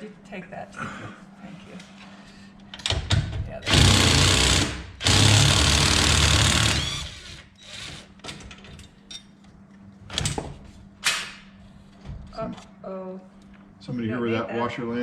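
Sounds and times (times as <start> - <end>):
cordless power driver running: 3.7 - 8.1.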